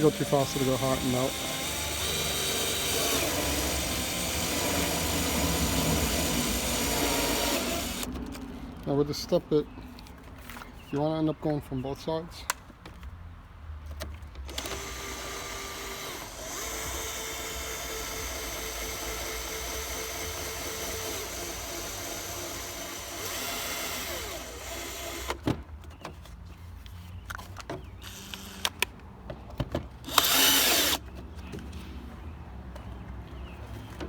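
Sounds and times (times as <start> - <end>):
power drill cutting plastic: 0.0 - 8.1, 14.5 - 25.4, 28.0 - 28.8, 30.1 - 31.0.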